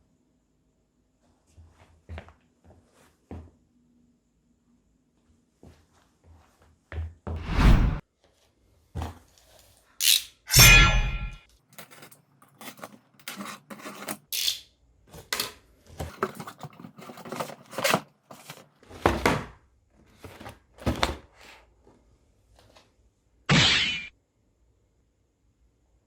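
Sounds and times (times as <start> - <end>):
shoebox paper packing rustling: 15.2 - 19.5, 20.1 - 21.6.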